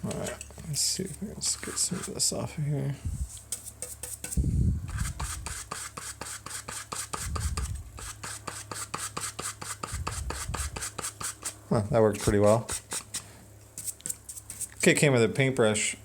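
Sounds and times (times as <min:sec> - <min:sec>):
paintbrush scrubbing foam: 0:01.5 - 0:02.4, 0:03.1 - 0:14.8
dull low thumps: 0:04.4 - 0:05.5.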